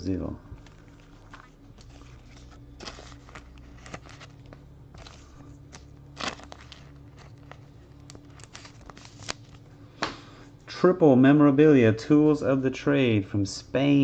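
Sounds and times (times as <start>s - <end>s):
low steady hum: 0.0s - 14.0s
trading cards rustling: 0.5s - 9.6s.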